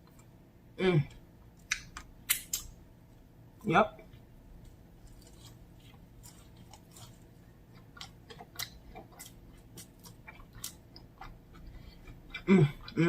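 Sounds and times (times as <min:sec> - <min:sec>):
chewing food: 0:04.0 - 0:13.0.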